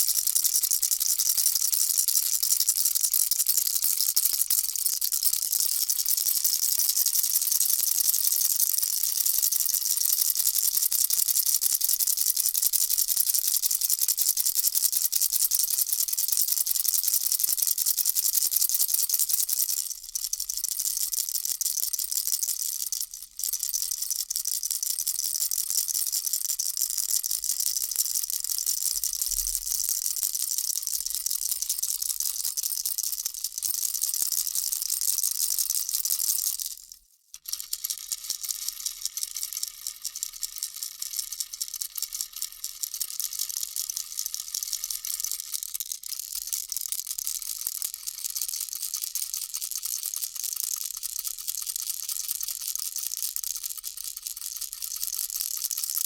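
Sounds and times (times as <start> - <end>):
baby rattle shaken: 0.0 - 56.0.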